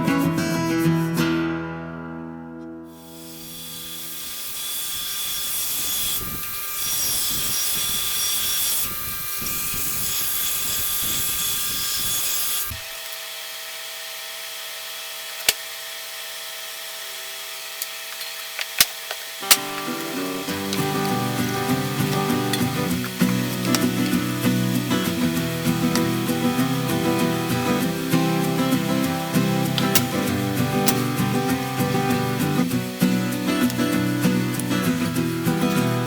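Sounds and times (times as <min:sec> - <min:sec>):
belt grinder grinding steel: 0:02.9 - 0:36.0
sharp clicks: 0:18.7 - 0:35.8
steady hum: 0:19.4 - 0:36.0.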